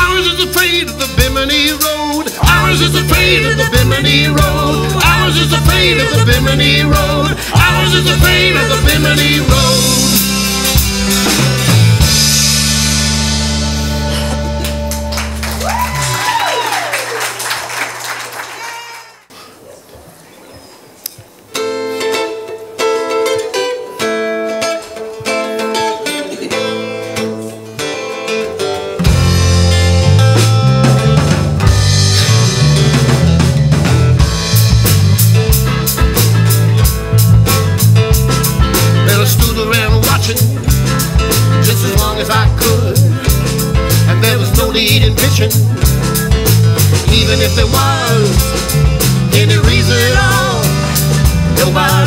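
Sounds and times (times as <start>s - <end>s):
acoustic guitar chords: 0.0s - 15.5s, 21.5s - 52.0s
drum kit beat: 0.0s - 16.5s, 28.6s - 52.0s
walking bass line: 0.0s - 16.5s, 28.9s - 52.0s.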